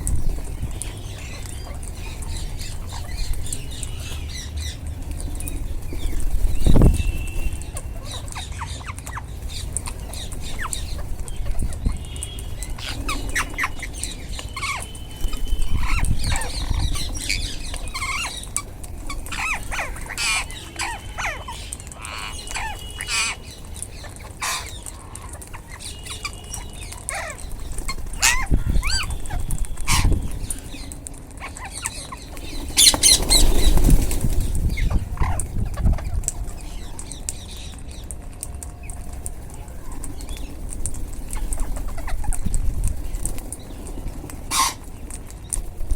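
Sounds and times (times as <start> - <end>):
wings flapping: 0.0 - 8.3, 21.8 - 45.9
parrots chirping and squawking: 0.0 - 38.1, 39.9 - 45.2.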